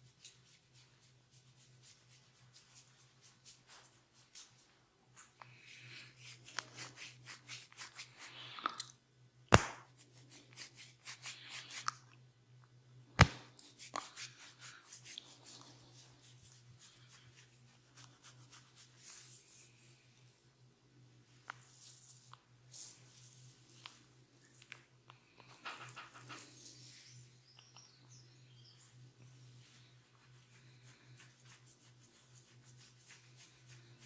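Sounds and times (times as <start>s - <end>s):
scratchy rubbing of massage: 0.0s - 4.7s, 5.9s - 8.6s, 10.0s - 12.0s, 13.5s - 20.0s, 29.2s - 34.0s
low steady hum: 0.0s - 34.0s
loud sharp snap: 9.5s - 9.9s.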